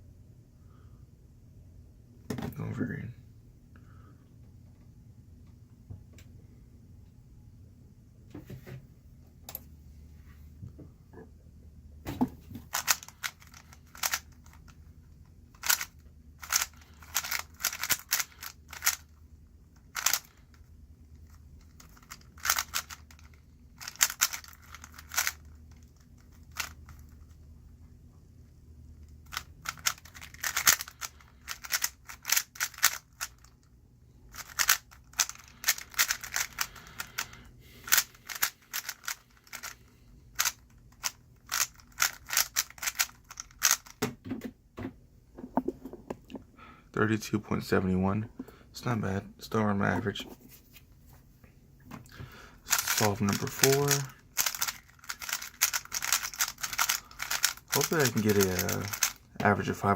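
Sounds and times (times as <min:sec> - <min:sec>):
speed cube layers clicking: 0:12.7 - 0:14.8, 0:15.5 - 0:19.1, 0:19.8 - 0:20.4, 0:21.7 - 0:27.0, 0:29.3 - 0:33.6, 0:34.3 - 0:37.3, 0:37.9 - 0:39.8, 0:40.4 - 0:43.9, 0:52.7 - 0:59.3.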